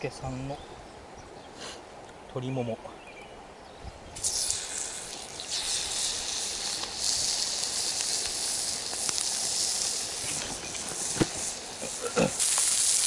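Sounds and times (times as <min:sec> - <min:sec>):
fire crackles: 0:04.1 - 0:13.0
meat sizzling over fire: 0:04.2 - 0:13.0.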